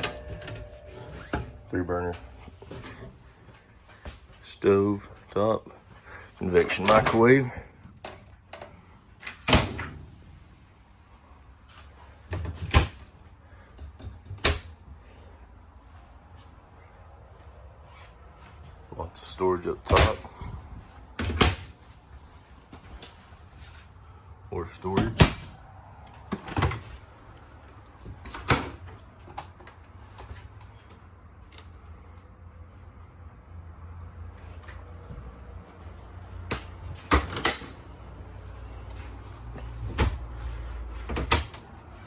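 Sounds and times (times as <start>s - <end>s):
cabinet doors opening and shutting: 0.0s - 3.4s, 6.6s - 10.2s, 12.3s - 13.2s, 14.0s - 14.8s, 19.7s - 20.6s, 21.2s - 21.8s, 24.8s - 25.7s, 26.3s - 27.0s, 28.1s - 29.5s, 36.4s - 41.8s.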